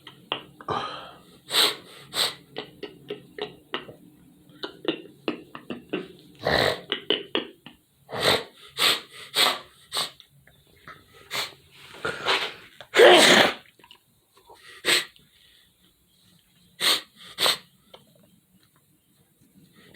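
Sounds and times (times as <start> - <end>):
person sneezing: 12.0 - 13.6.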